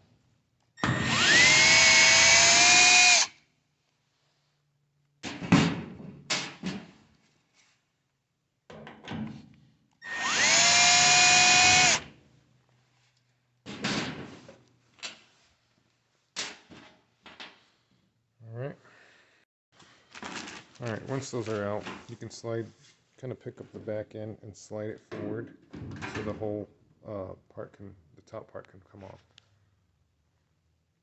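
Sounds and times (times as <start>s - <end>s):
power drill whining: 0.8s - 3.3s, 10.0s - 12.0s.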